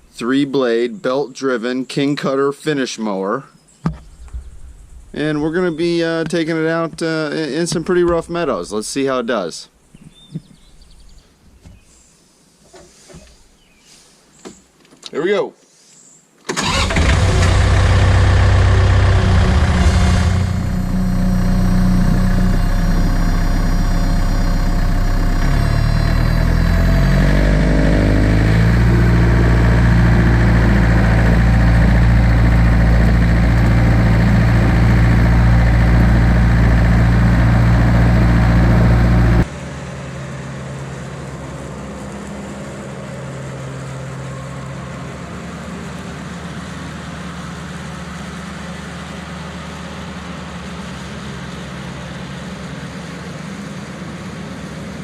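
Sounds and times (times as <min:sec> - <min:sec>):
diesel engine running: 0:03.9 - 0:08.9, 0:16.5 - 0:55.0
finish mower running: 0:16.5 - 0:55.0.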